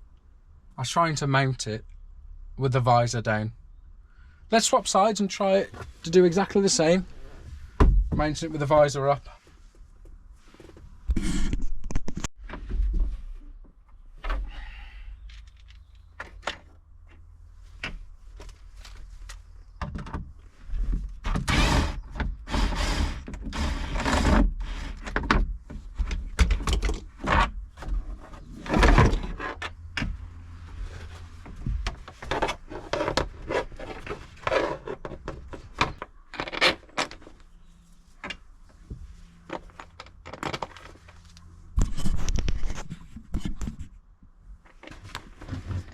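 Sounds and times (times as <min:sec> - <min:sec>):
plastic knocks and scrapes: 0:17.8 - 0:37.4.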